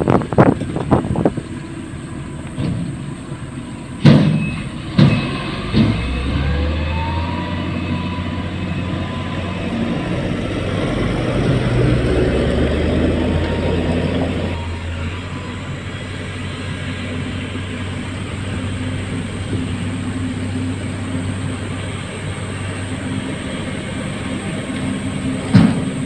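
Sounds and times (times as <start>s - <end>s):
diesel engine running: 0.0s - 26.0s
metal clanks and knocks: 2.4s - 3.1s, 4.0s - 6.3s, 25.3s - 26.0s.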